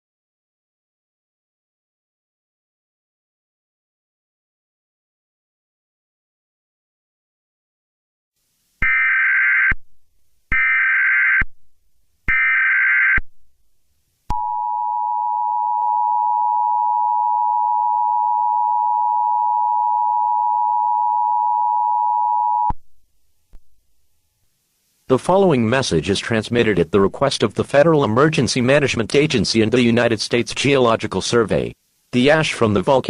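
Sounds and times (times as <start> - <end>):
steady two-tone attention signal: 14.3 - 22.7.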